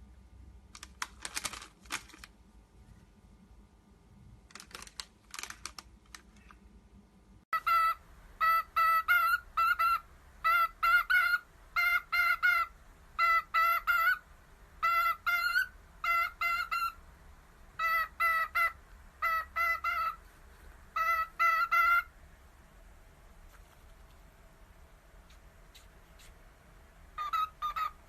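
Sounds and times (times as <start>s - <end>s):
bird calling: 7.6s - 14.2s, 14.8s - 17.0s, 17.8s - 20.2s, 20.9s - 22.1s, 27.2s - 28.0s.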